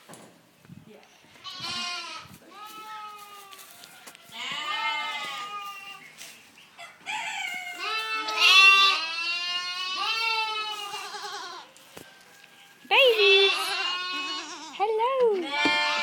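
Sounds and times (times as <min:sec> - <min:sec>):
goat kids bleating: 0:01.3 - 0:06.2, 0:07.1 - 0:12.2, 0:13.1 - 0:16.0.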